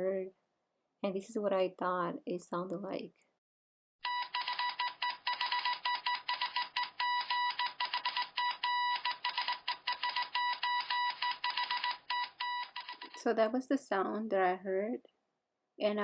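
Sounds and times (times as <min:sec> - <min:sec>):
morse code beeps: 0:04.0 - 0:13.2.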